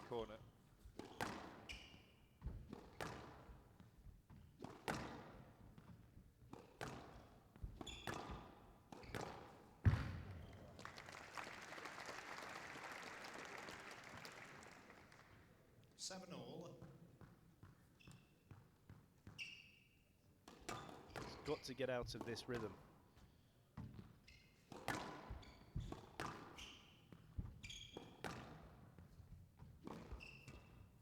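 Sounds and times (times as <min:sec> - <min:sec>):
squash ball striking and smacking: 0:00.9 - 0:10.7, 0:20.4 - 0:21.6, 0:23.8 - 0:31.0
audience applause: 0:10.5 - 0:15.4.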